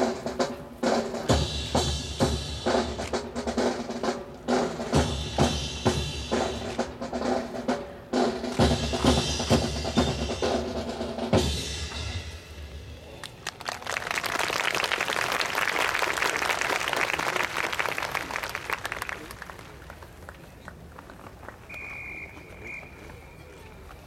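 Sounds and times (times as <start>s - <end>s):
marching snare and bass drums: 0.0s - 13.1s
audience applause: 13.2s - 21.7s.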